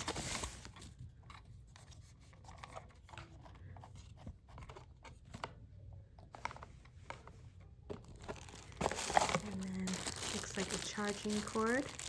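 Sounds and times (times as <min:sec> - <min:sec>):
packaging rustling: 0:00.0 - 0:01.0, 0:07.9 - 0:12.0.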